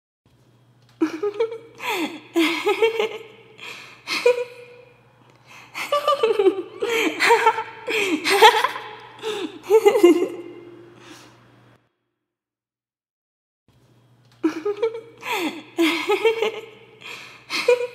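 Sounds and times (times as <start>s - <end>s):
person giggling: 1.0s - 10.9s, 14.4s - 17.9s.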